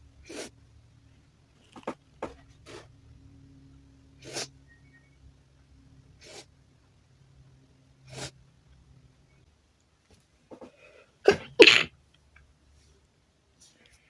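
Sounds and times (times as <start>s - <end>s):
person sneezing: 11.3s - 11.9s.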